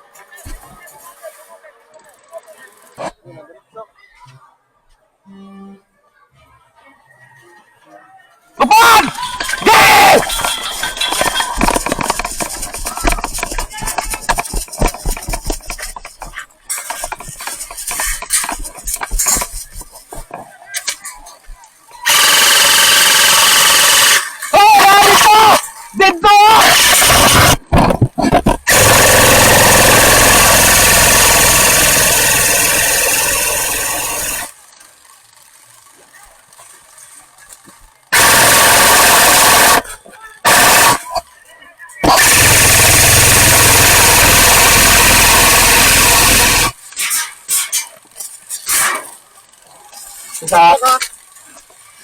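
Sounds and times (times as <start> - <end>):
people shouting: 8.6 - 15.6, 24.2 - 27.6
airsoft guns firing: 9.0 - 20.3, 22.0 - 25.7, 26.6 - 34.5, 38.1 - 41.2, 42.0 - 46.8.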